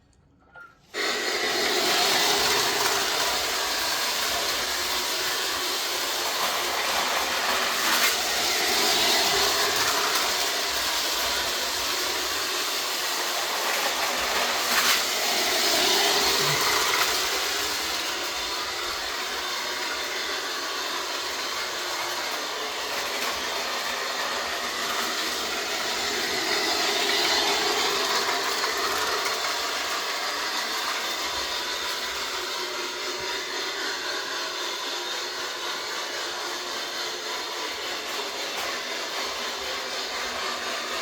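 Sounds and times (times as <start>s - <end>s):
model train rolling on track: 2.0s - 12.6s, 13.4s - 20.0s.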